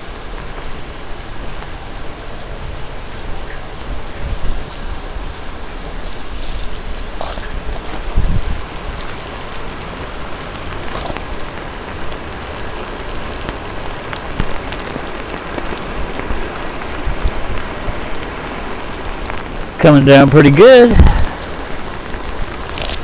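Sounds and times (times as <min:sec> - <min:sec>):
heavy rain falling: 0:00.0 - 0:23.0
sharp raindrop strikes: 0:00.0 - 0:23.0.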